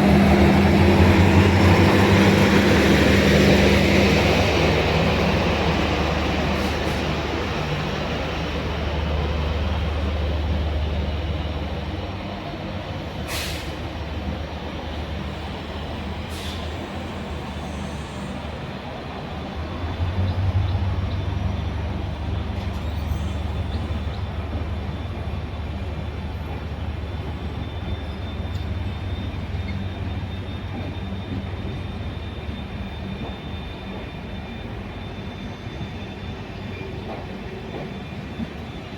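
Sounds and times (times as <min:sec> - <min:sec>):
train rumbling: 0:00.0 - 0:38.9
brief sharp clicks or hisses: 0:13.3 - 0:13.8.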